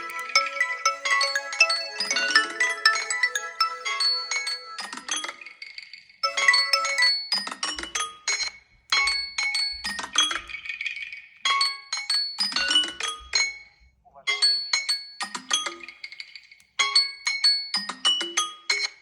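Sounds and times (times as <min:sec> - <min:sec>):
phone ringtone chiming melody: 0:00.0 - 0:19.0.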